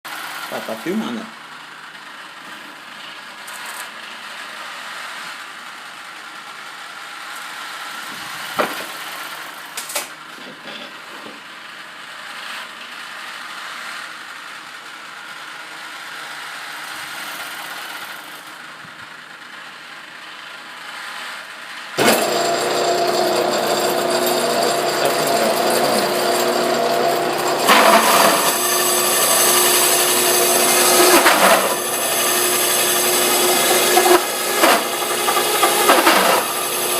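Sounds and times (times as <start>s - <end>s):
drill bit grinding workpiece: 22.0s - 36.9s
drill press motor humming: 22.0s - 36.9s.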